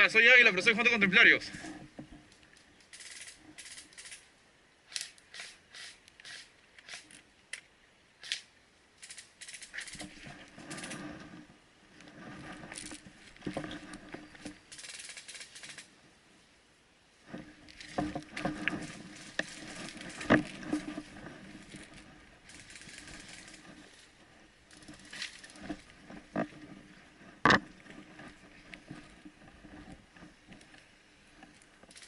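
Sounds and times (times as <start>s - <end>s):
dry leaves rustling and crunching: 17.8s - 29.0s.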